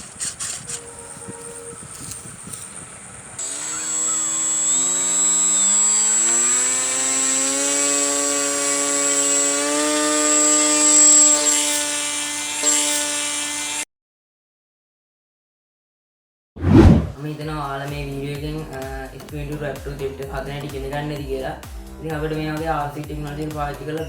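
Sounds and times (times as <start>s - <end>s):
electric motor whine rising: 3.4s - 13.8s.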